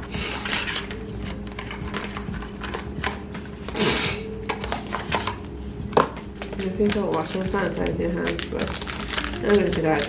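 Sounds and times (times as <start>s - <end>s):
packaging clicks and rustles: 0.2s - 3.8s, 6.0s - 10.0s.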